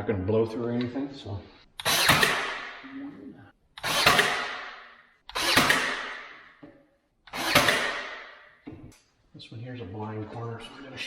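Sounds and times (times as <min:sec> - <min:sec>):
nail gun firing: 0:01.8 - 0:02.8, 0:03.8 - 0:06.6, 0:07.3 - 0:08.6.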